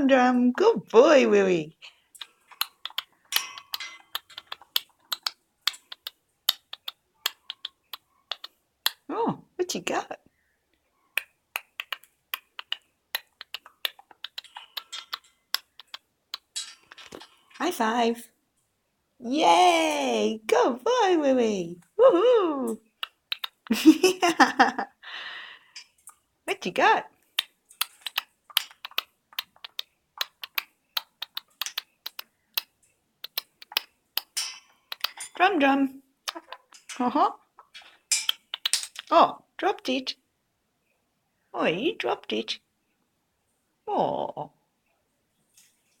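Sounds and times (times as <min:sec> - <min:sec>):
person clicking: 0:02.2 - 0:09.0, 0:11.2 - 0:17.1, 0:22.7 - 0:23.8, 0:27.3 - 0:35.3, 0:37.6 - 0:39.1.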